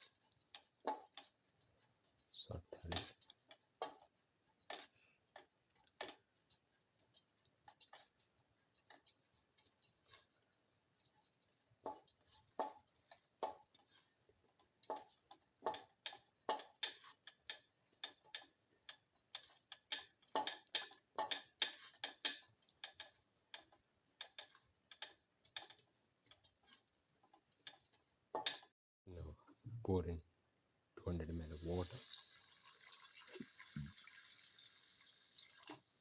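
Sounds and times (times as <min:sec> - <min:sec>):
spatula scraping vegetables in pan: 0:00.0 - 0:28.7.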